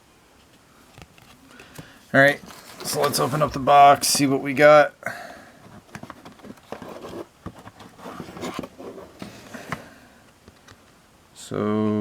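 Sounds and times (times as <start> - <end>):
cardboard and paper rustling: 1.0 - 4.6, 5.4 - 10.9.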